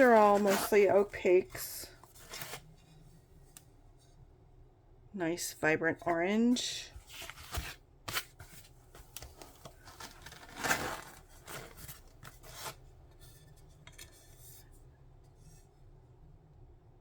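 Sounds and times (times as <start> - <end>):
glass and packaging scraping: 0.0 - 2.7, 9.8 - 12.8.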